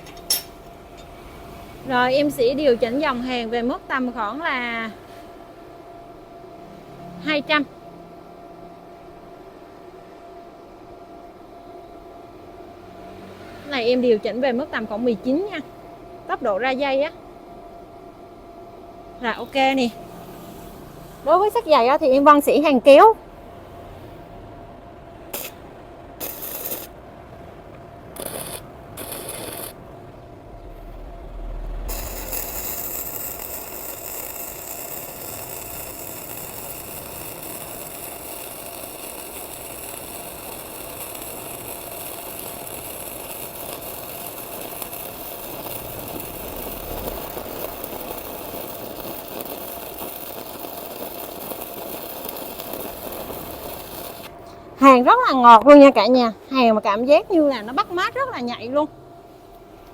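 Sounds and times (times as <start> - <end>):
welding arc crackling: 0.0 - 1.1, 1.8 - 4.8, 25.3 - 27.0, 28.1 - 56.0.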